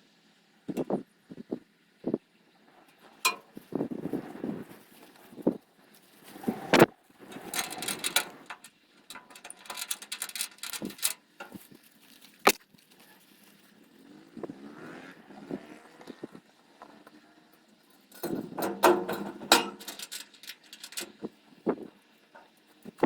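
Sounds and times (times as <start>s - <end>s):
rustling: 3.0s - 14.0s, 18.0s - 23.0s
knocks and clunks: 18.2s - 21.8s.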